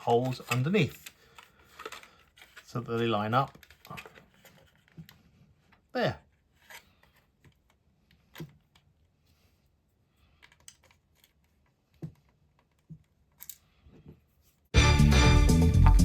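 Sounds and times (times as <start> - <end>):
plastic parts clicking and tapping: 0.0 - 5.8, 10.3 - 14.2.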